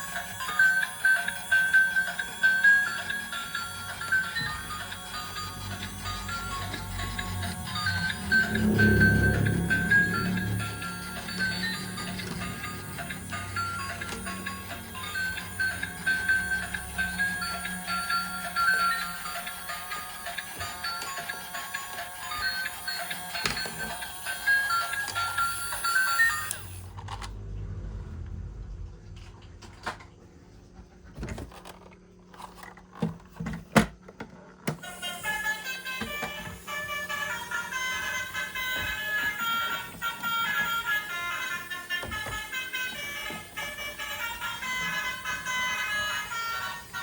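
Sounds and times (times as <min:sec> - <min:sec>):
high melody notes: 0:00.0 - 0:26.7
music jingle: 0:00.0 - 0:26.8, 0:34.8 - 0:47.0
toy vehicles clicking and knocking: 0:00.1 - 0:27.3, 0:31.4 - 0:47.0
steady low tone: 0:01.8 - 0:20.6.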